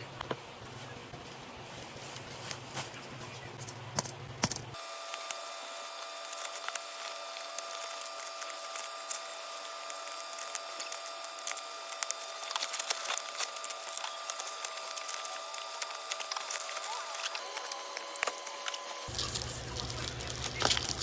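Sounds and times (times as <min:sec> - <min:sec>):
packaging crackling and crinkling: 0:00.7 - 0:03.7, 0:04.7 - 0:21.0.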